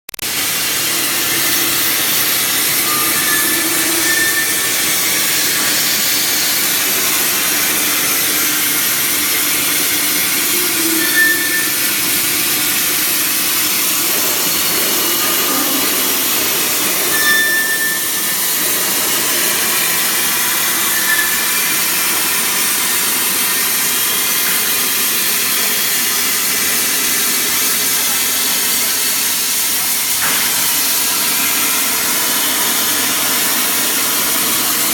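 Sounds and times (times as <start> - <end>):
plasma arc hissing: 0.2 - 16.4
short high whistles: 2.8 - 4.9, 10.8 - 11.9, 17.1 - 18.4, 20.8 - 21.8.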